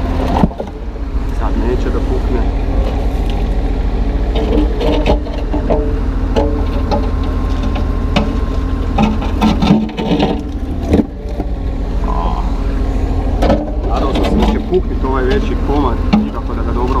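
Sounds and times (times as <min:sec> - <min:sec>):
excavator diesel engine running: 0:00.0 - 0:17.0
concrete chunks knocking: 0:04.3 - 0:11.5.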